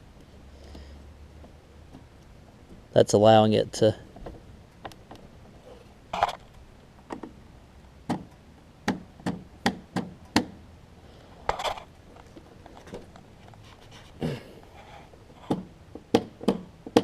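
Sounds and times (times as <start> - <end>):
sharp clicks and knocks: 4.1 - 7.4, 8.0 - 10.6, 15.4 - 17.0.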